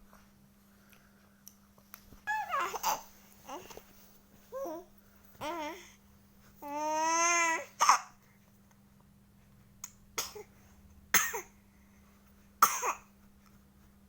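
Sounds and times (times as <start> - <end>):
baby squealing: 2.3 - 3.0
baby coughing: 2.6 - 3.0, 7.8 - 8.2, 10.2 - 10.5, 11.1 - 11.6, 12.6 - 13.1.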